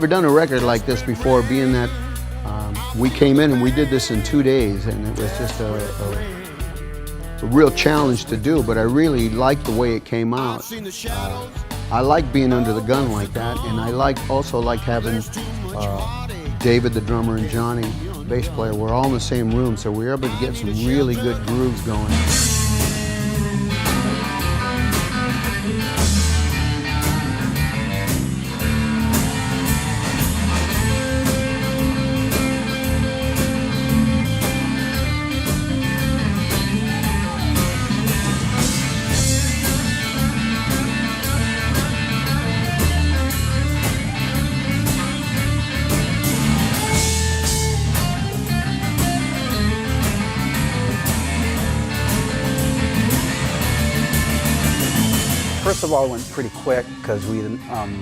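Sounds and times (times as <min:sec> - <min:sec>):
blues-rock band playing: 0:00.0 - 0:58.0
guitar: 0:00.0 - 0:58.0
drum beat: 0:20.3 - 0:56.3.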